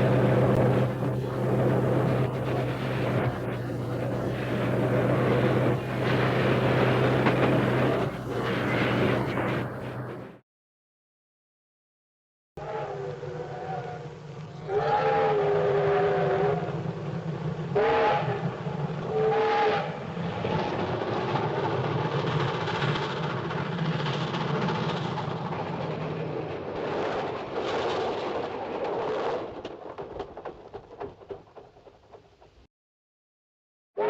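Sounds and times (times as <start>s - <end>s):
train rushing noise: 0.0s - 10.4s
cartoon steam train whistle: 12.6s - 16.8s, 17.8s - 18.5s, 19.1s - 20.0s.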